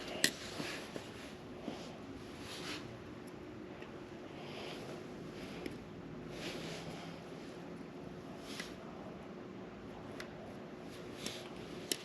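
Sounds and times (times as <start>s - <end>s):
soft rustling: 0.0s - 3.1s, 4.3s - 8.9s
low steady hum: 0.0s - 12.0s.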